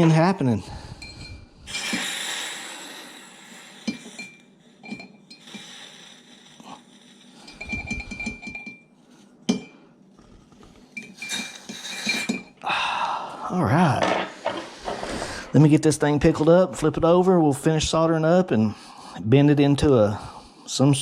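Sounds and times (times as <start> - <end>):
metallic clinks and taps: 7.5 - 8.9.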